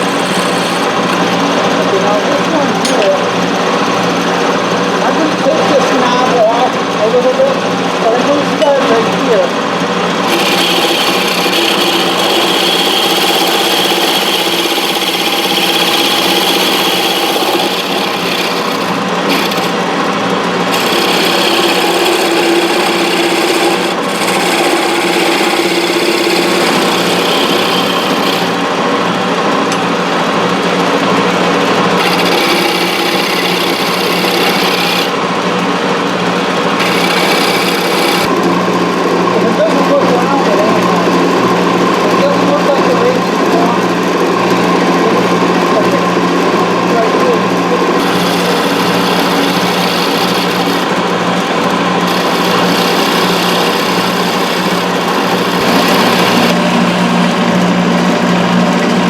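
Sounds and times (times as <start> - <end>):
turning tool scraping wood: 0.0 - 3.2, 8.2 - 35.2, 36.0 - 38.7, 46.9 - 56.8
wood lathe motor hum: 0.0 - 59.0.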